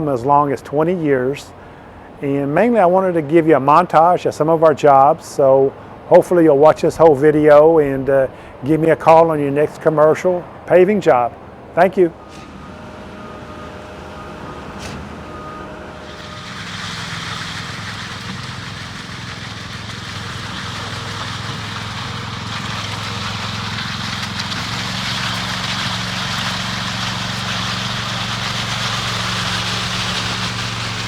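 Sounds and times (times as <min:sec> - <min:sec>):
heavy machinery engine running: 0:11.4 - 0:31.0
broad hiss: 0:16.0 - 0:31.0.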